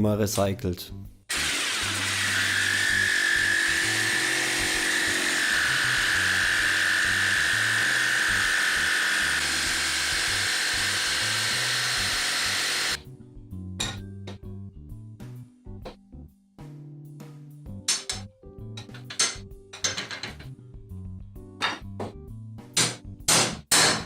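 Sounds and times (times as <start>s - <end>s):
power tool motor whining: 1.3s - 13.0s.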